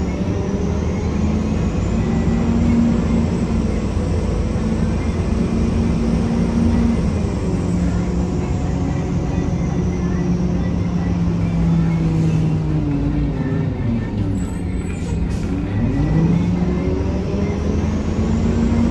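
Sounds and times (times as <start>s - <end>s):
bus engine grinding drone: 0.0s - 18.9s.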